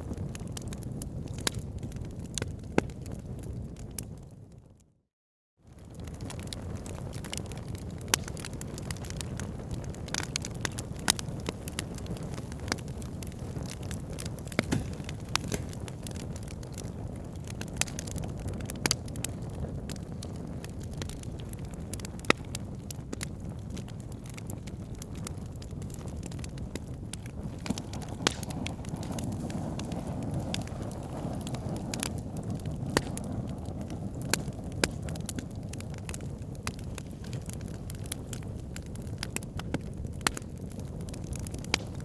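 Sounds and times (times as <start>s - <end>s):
wood fire crackling: 0.0s - 4.2s, 5.7s - 42.0s
low rumble of flames: 0.0s - 5.0s, 5.6s - 42.0s
sharp pops and snaps: 14.4s - 16.3s, 27.4s - 30.7s.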